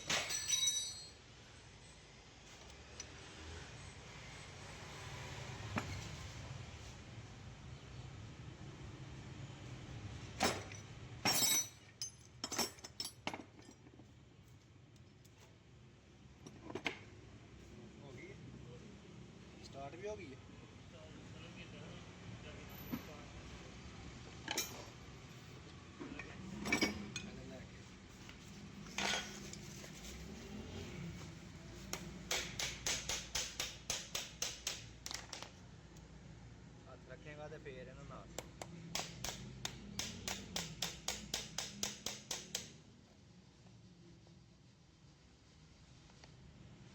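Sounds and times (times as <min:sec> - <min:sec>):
metallic clinks and knocks: 0:00.0 - 0:01.2, 0:10.4 - 0:13.9, 0:24.5 - 0:24.9, 0:26.6 - 0:27.4
hammer striking metal: 0:31.9 - 0:34.9, 0:38.9 - 0:42.7.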